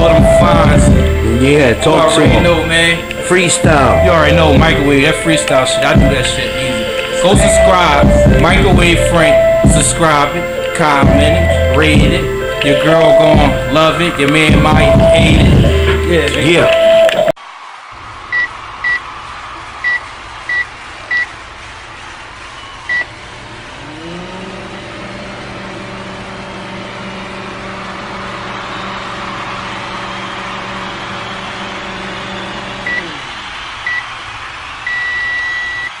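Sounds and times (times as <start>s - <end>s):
microwave oven humming: 22.4s - 34.1s.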